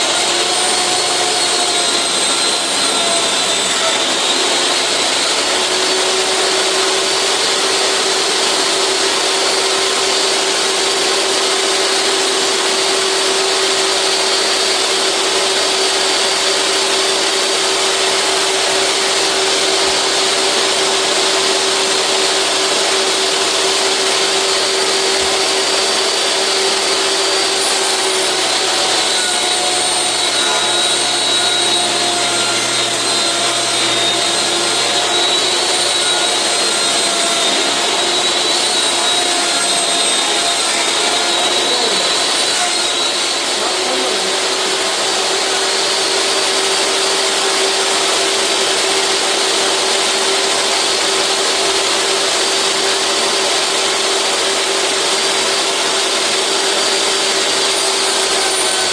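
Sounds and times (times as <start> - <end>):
table saw cutting plastic: 0.0 - 58.9.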